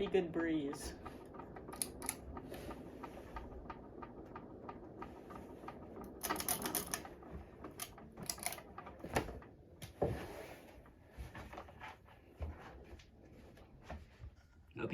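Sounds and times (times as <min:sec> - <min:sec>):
ceiling fan air rush: 0:00.0 - 0:14.2.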